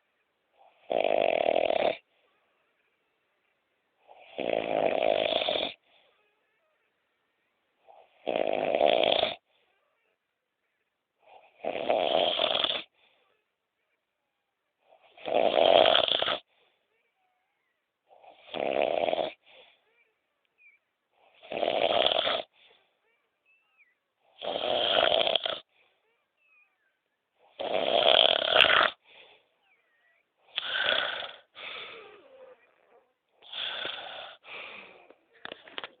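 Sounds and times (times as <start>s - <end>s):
person snoring: 0.6s - 2.0s, 4.0s - 5.8s, 7.9s - 9.4s, 11.2s - 12.9s, 15.0s - 16.5s, 18.1s - 19.8s, 21.2s - 22.6s, 24.4s - 25.8s, 27.5s - 29.4s, 30.5s - 35.1s.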